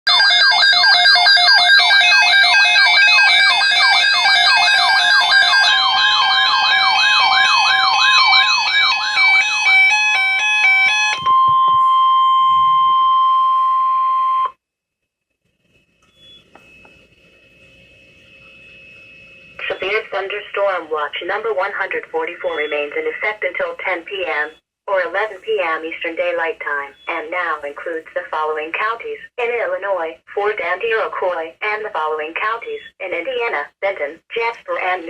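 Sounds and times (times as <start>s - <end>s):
electronic siren-like sweeping tone: 0.1s - 13.3s, 16.2s - 20.0s
steady warning alarm tone: 0.1s - 14.5s, 16.0s - 20.8s
stepped beeps: 11.0s - 14.5s, 16.0s - 17.0s, 22.4s - 22.9s.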